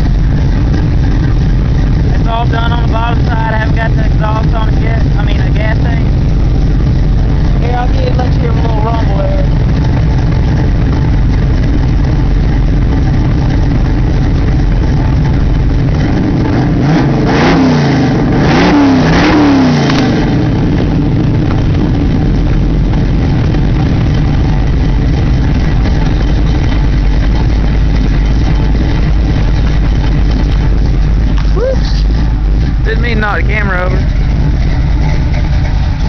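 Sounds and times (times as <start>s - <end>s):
car engine idling with a rumble: 0.0s - 36.0s
engine throttle blips: 0.0s - 36.0s.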